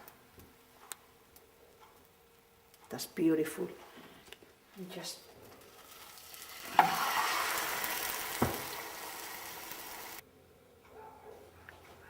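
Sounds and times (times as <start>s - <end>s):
omelette sizzling in frying pan: 5.4s - 10.2s
pan clunk: 8.3s - 8.8s.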